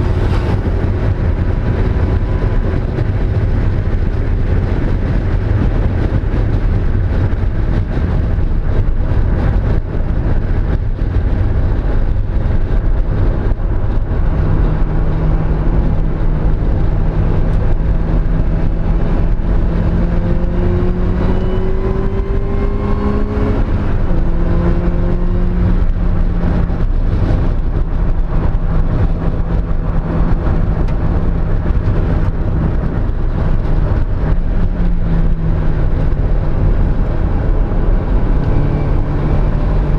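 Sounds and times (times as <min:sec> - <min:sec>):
heavy low rumble: 0:00.0 - 0:39.9
car engine revving hard: 0:14.1 - 0:39.9.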